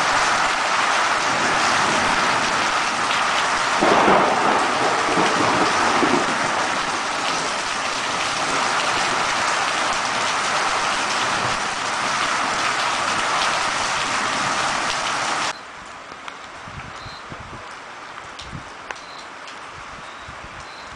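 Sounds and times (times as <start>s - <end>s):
thunder rumble: 0.0s - 15.4s
heavy rain pouring: 0.0s - 20.9s.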